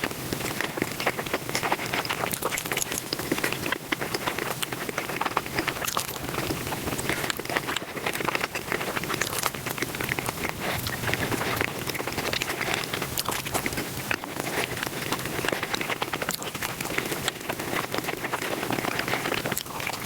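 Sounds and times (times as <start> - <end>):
sped-up chewing and crunching: 0.0 - 20.0.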